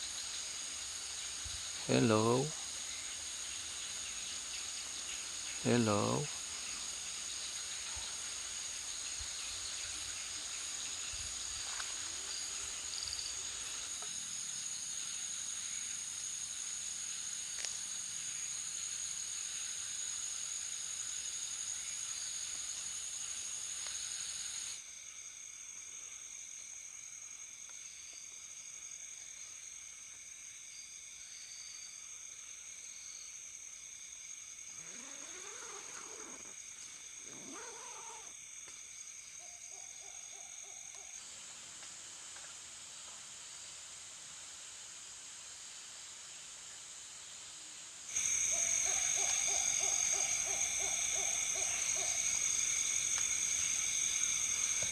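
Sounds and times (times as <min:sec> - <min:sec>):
hiss: 0:00.0 - 0:24.9, 0:34.8 - 0:38.9, 0:40.9 - 0:54.9
lower insect tones: 0:00.0 - 0:54.9
night insects trilling: 0:00.0 - 0:54.9.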